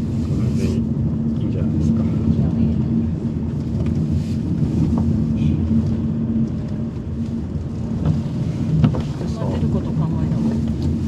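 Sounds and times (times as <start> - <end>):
car engine humming: 0.0 - 11.0.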